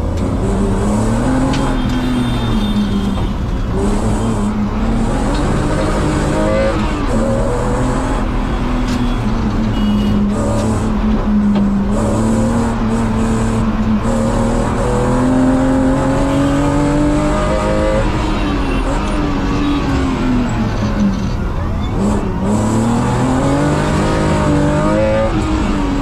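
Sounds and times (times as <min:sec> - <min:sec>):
car engine accelerating hard: 0:00.0 - 0:26.0.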